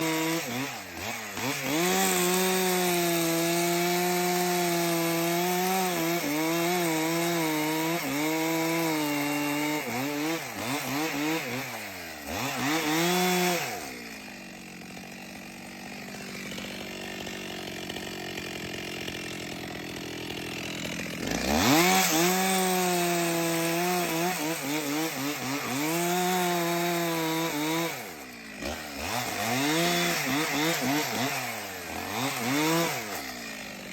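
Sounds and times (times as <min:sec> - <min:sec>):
chainsaw cutting into log: 0:00.0 - 0:33.9.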